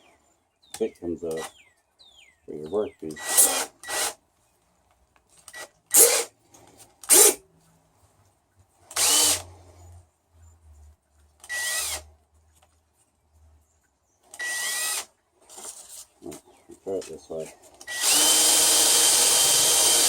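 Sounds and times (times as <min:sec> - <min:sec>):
power drill spinning in bursts: 0:03.2 - 0:04.2, 0:05.5 - 0:06.3, 0:07.1 - 0:07.4, 0:08.9 - 0:09.5, 0:11.5 - 0:12.0, 0:14.4 - 0:15.1, 0:17.9 - 0:20.0.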